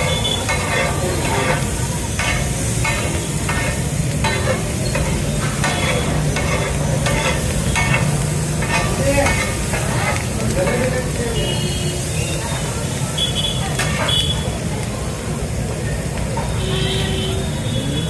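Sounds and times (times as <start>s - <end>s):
metal spatula scraping a pan: 0.0s - 11.2s, 13.7s - 14.3s
oil and vegetables sizzling: 0.0s - 18.0s.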